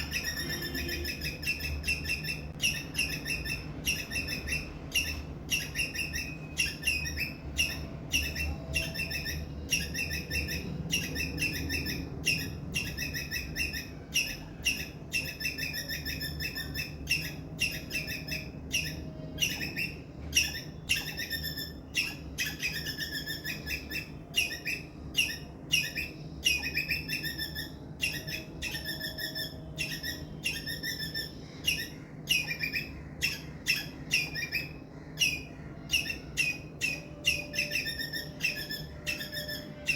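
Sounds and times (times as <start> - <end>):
squirrel chirping: 0.0 - 39.9.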